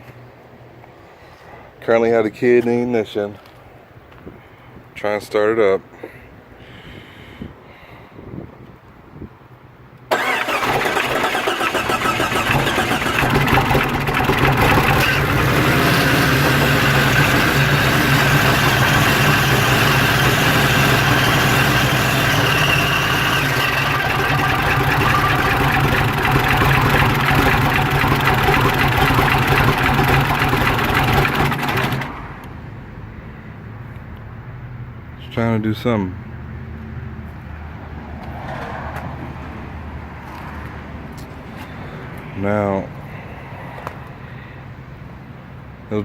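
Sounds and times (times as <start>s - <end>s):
car engine idling roughly: 10.2s - 32.2s.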